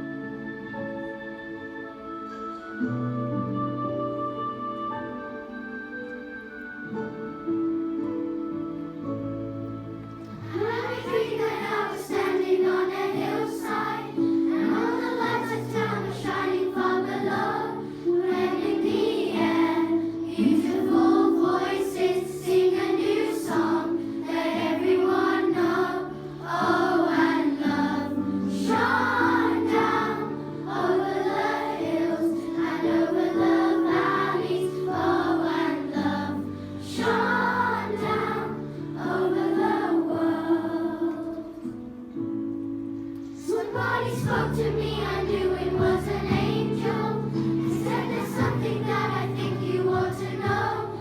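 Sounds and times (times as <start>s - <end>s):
children's choir singing: 10.3s - 41.9s, 43.3s - 51.0s.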